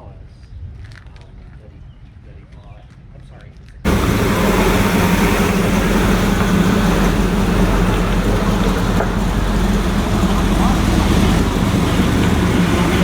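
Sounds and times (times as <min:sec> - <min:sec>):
car engine running: 0:03.9 - 0:13.0.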